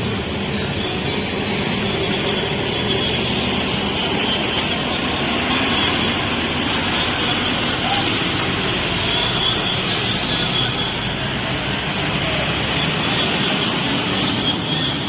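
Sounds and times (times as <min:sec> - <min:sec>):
bus diesel engine running: 0:00.0 - 0:15.0.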